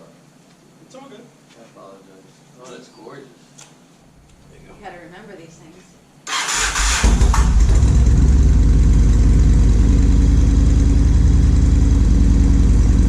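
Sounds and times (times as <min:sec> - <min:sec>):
motorcycle engine idling: 0:07.0 - 0:13.0.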